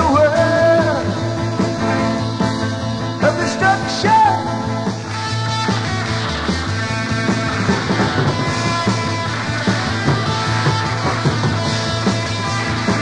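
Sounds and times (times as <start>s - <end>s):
rock guitar: 0.0s - 13.0s
steady drum beat: 0.0s - 13.0s.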